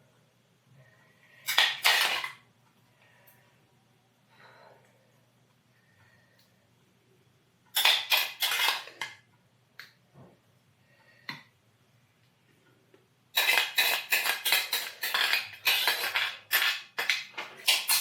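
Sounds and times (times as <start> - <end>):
spoon scraping a dish: 7.8 - 9.2, 13.4 - 18.0.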